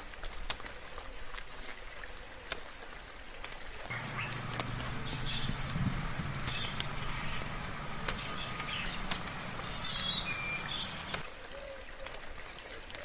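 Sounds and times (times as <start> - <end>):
steady rain: 0.0 - 13.0
birds chirping: 3.9 - 11.2
low steady hum: 3.9 - 11.2
sharp drip ticks: 3.9 - 11.2.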